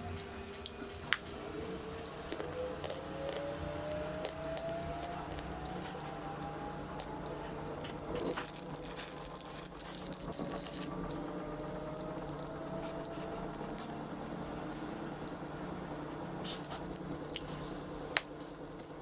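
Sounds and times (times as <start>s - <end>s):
chewing chalk: 0.0s - 19.0s.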